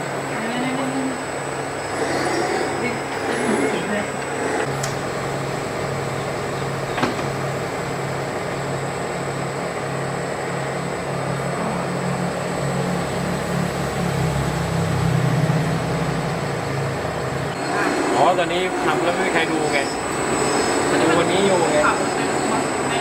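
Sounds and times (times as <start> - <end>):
small electric motors humming: 0.0 - 15.9, 17.2 - 23.0.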